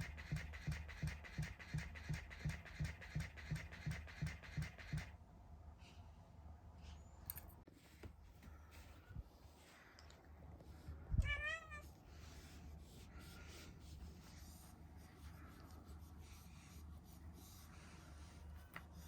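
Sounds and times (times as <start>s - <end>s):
cat meowing: 11.2s - 11.9s.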